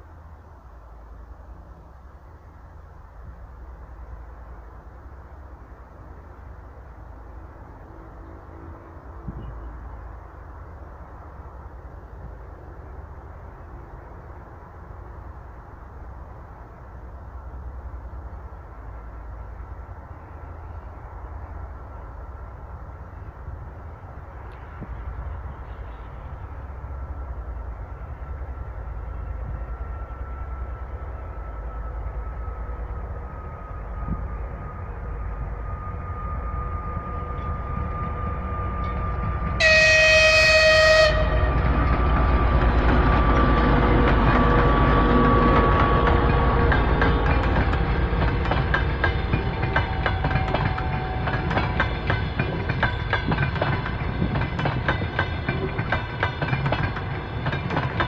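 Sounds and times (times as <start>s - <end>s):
train rumble: 0.0s - 58.0s
train horn blast: 28.6s - 42.1s
wheel clatter over rail joints: 41.5s - 58.0s.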